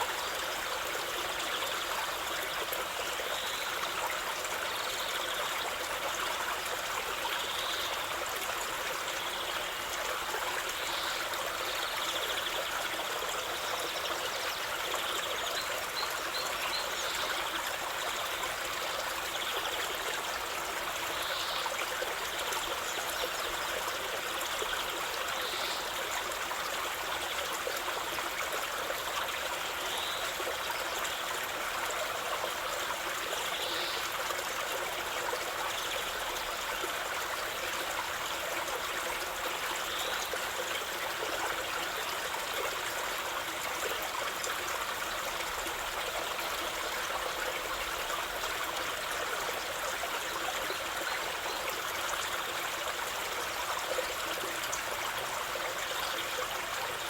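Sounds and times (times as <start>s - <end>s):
stream of running water: 0.0s - 57.0s.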